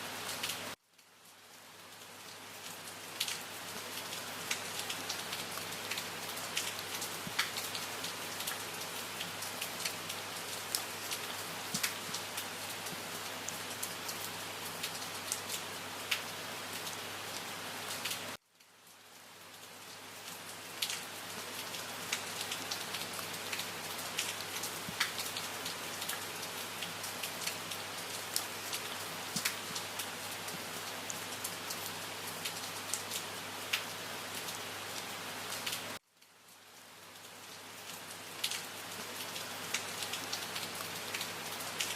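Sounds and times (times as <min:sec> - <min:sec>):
steady rain hissing: 0:00.0 - 0:41.9
raindrops ticking: 0:04.0 - 0:13.1, 0:20.3 - 0:26.2, 0:26.8 - 0:30.6.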